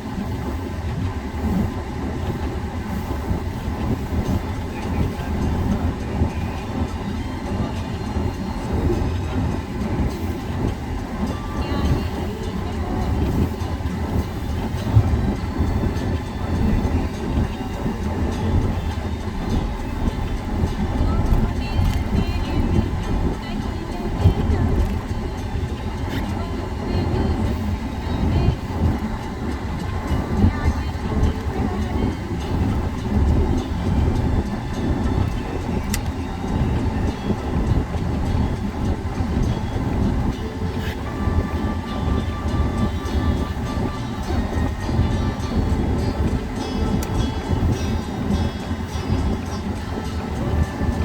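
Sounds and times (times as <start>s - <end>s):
car road noise rumble: 0.0s - 51.0s.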